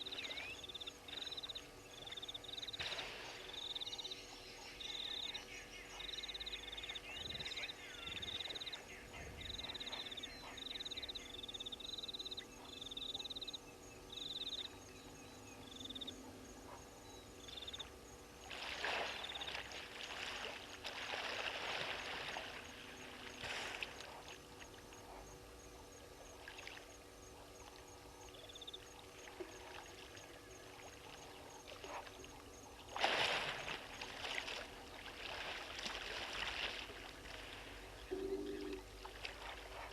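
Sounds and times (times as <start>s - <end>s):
water sloshing and splashing: 18.4s - 25.1s, 26.2s - 27.0s, 29.0s - 38.1s, 38.7s - 39.9s.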